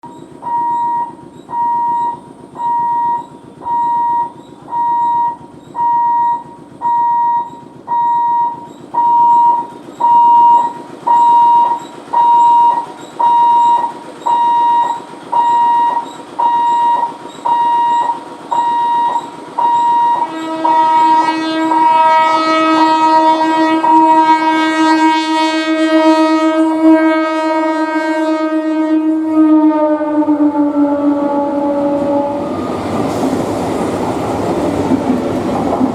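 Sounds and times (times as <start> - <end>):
level crossing alarm beeping: 0.0 - 22.6
train horn blast: 2.9 - 32.8.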